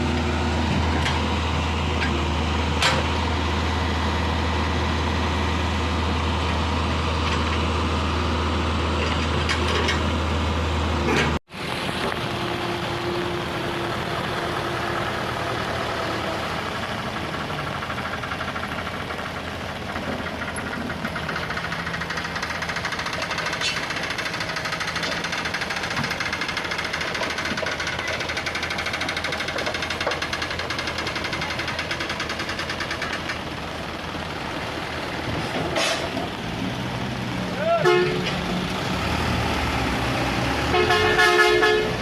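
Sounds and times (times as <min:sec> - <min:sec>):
excavator diesel engine running: 0:00.0 - 0:42.0.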